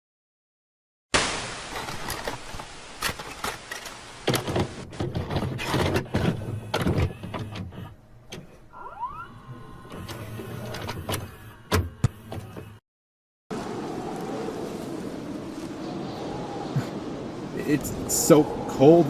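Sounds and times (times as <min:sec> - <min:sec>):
short rising squeak: 0:08.7 - 0:11.4.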